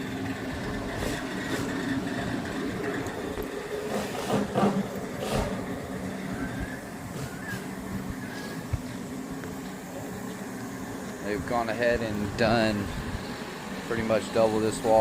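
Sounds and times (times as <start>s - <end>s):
low machine hum: 0.0s - 15.0s.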